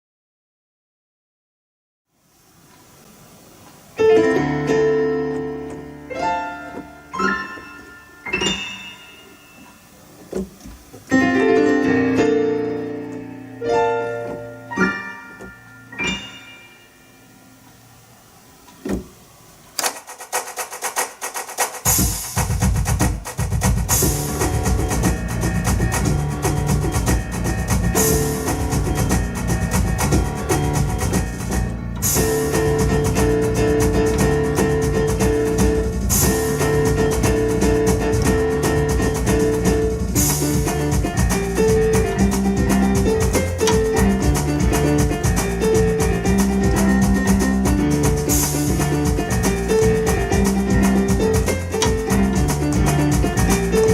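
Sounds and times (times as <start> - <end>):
piano chords: 4.0 - 18.2, 21.9 - 53.9
drum rhythm: 19.8 - 53.9
bass: 22.4 - 53.9.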